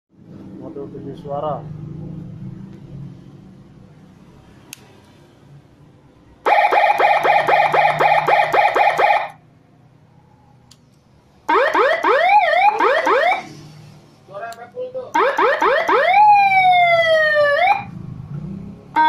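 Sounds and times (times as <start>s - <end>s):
electronic siren rising sweeps: 6.5s - 9.4s, 11.5s - 13.7s, 15.2s - 18.0s.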